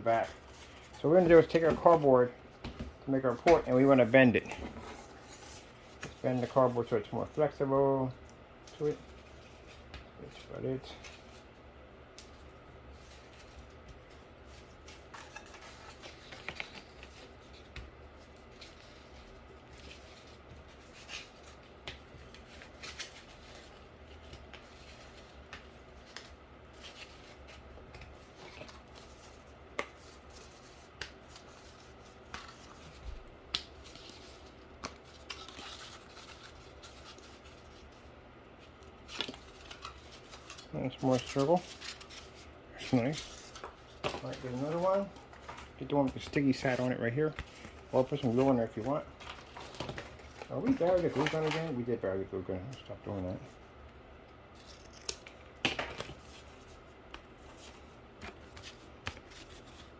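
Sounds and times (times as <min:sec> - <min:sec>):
low steady hum: 0:00.0 - 0:59.9
cardboard crackling and scraping: 0:39.2 - 0:51.8.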